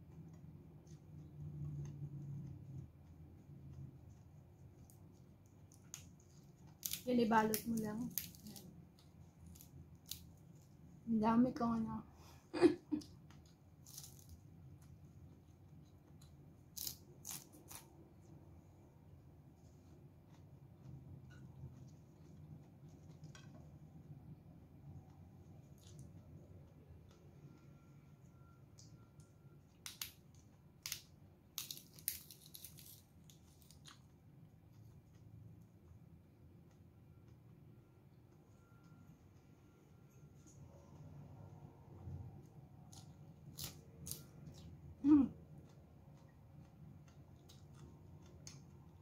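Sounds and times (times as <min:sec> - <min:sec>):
leafy greens crackling: 0:05.7 - 0:10.6, 0:16.7 - 0:17.9
leafy greens crunching when chewed: 0:13.4 - 0:17.9, 0:30.8 - 0:35.3, 0:42.9 - 0:44.8, 0:45.6 - 0:49.0.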